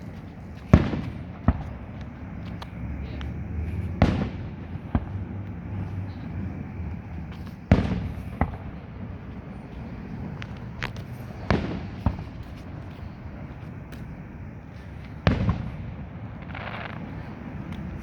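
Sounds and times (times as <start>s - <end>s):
firework booms: 0.0s - 2.2s, 4.0s - 5.3s, 7.7s - 13.4s, 15.2s - 18.0s
firework cracks: 0.0s - 3.2s, 3.9s - 6.2s, 7.2s - 18.0s.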